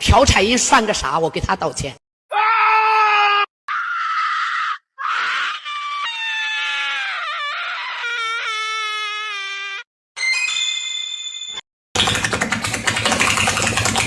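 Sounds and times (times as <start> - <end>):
long wavering scream: 2.3 - 9.9.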